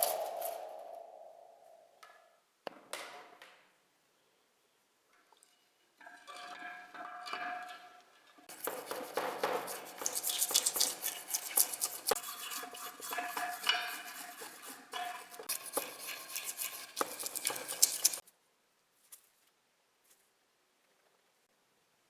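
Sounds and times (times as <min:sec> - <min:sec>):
metal scraping and clinking: 0:00.0 - 0:01.8, 0:08.5 - 0:18.2.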